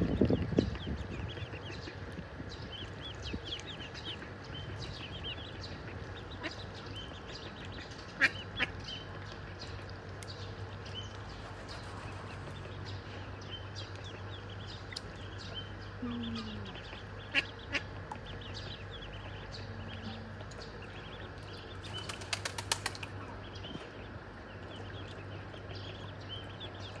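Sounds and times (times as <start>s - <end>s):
ducklings peeping: 0.0s - 27.0s
low hum: 9.1s - 17.3s.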